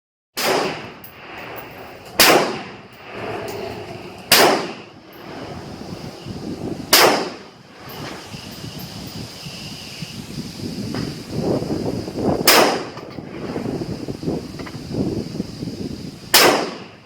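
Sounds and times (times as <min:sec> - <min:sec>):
rifle shots with echo: 0:00.4 - 0:01.4, 0:02.2 - 0:02.8, 0:04.3 - 0:04.8, 0:06.9 - 0:07.4, 0:16.4 - 0:16.9.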